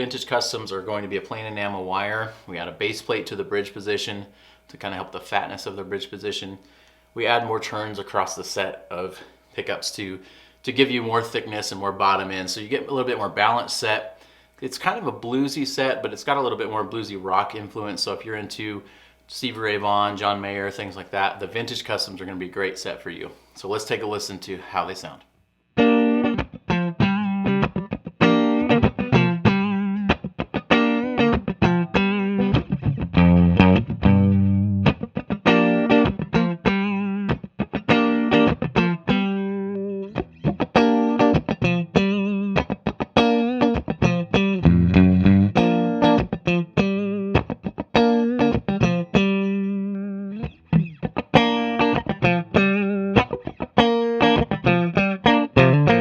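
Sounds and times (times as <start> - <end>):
clean electric guitar playing: 25.8 - 56.0.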